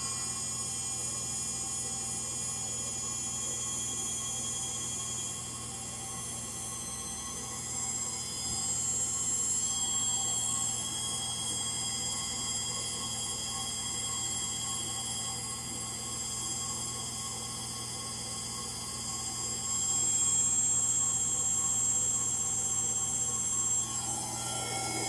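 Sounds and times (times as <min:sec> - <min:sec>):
high-pitched whine: 0:00.0 - 0:01.4, 0:23.0 - 0:25.0.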